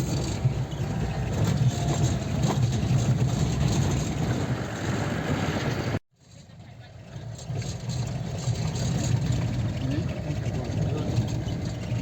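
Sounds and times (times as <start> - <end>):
van engine droning: 0.0 - 6.0, 6.6 - 12.0.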